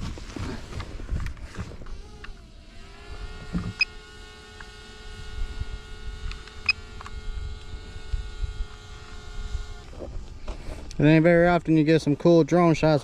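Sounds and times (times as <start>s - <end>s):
drone propellers whining: 0.0s - 11.8s
sharp clicks: 6.2s - 7.8s.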